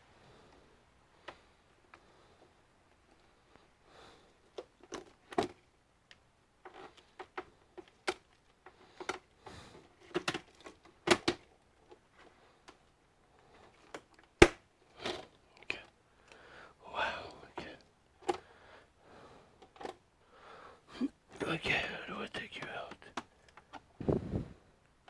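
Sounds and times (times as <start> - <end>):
loud sharp plastic crack: 14.0 - 14.7.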